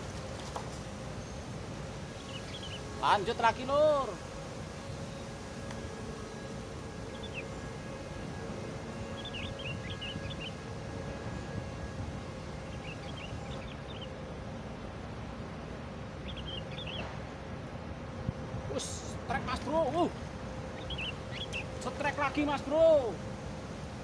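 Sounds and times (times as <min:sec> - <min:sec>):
faint hum: 0:00.0 - 0:24.0
low outdoor rumble: 0:00.0 - 0:24.0
high chirping: 0:02.1 - 0:03.4, 0:06.4 - 0:07.8, 0:09.0 - 0:10.6, 0:12.6 - 0:14.2, 0:16.2 - 0:17.1, 0:20.6 - 0:22.0.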